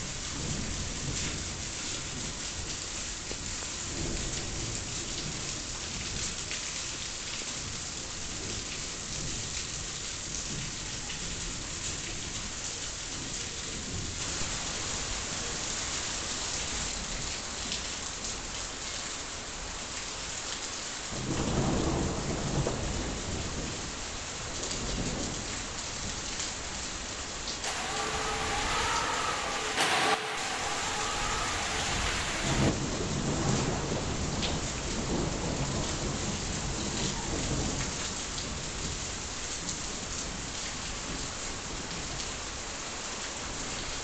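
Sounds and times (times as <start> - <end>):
heavy rain: 27.6 - 33.1
loud thunderclap: 27.7 - 32.8.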